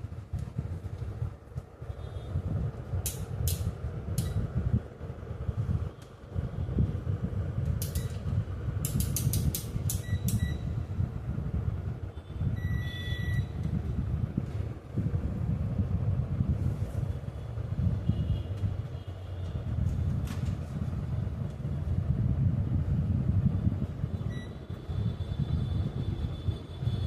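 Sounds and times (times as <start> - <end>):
small tools clicking and tapping: 7.8 - 8.2, 8.8 - 10.4.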